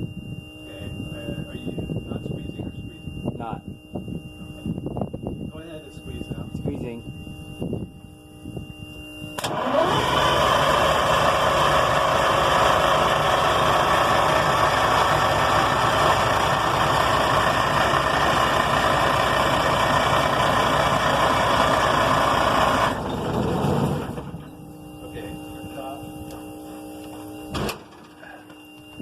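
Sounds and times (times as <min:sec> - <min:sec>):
diesel engine running: 0:09.4 - 0:29.0.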